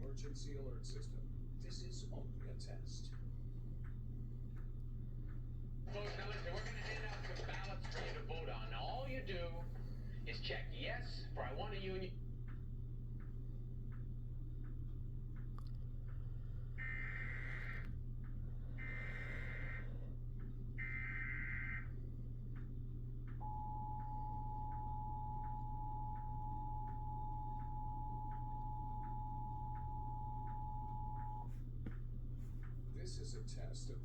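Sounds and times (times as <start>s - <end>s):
two-tone attention signal: 23.4s - 31.5s.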